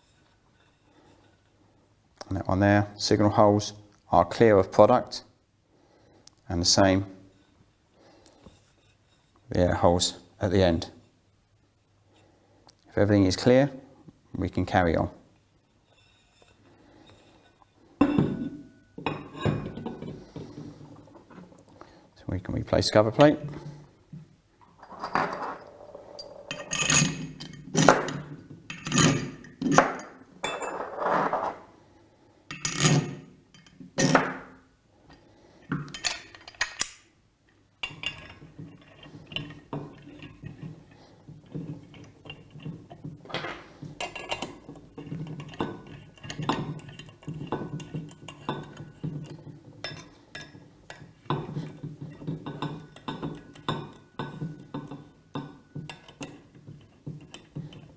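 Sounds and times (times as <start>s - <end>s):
metal pump parts clinking: 18.0s - 21.6s, 24.6s - 31.7s, 32.5s - 34.6s, 35.6s - 37.1s, 37.8s - 57.9s.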